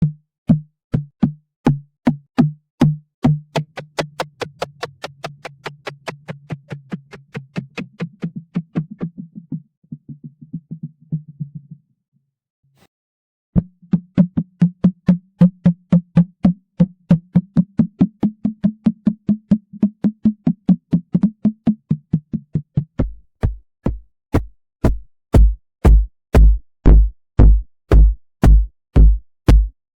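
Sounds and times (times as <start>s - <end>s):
cartoon bounce thumps: 1.7s - 8.8s, 23.0s - 29.8s.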